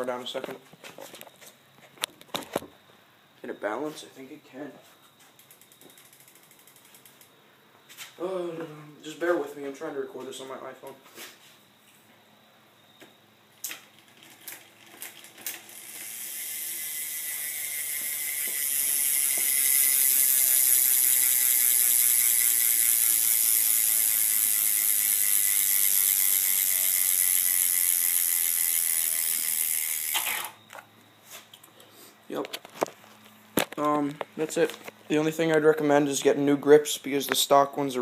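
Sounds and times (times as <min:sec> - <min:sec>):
bicycle hub ratchet clicking: 0:05.4 - 0:07.3, 0:13.7 - 0:30.6.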